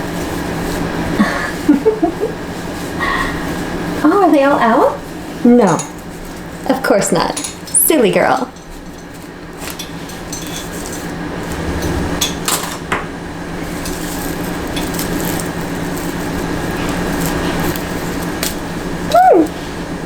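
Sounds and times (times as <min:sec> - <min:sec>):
steady low hum: 0:00.0 - 0:20.0
hair rollers clicking and rattling: 0:13.7 - 0:19.2.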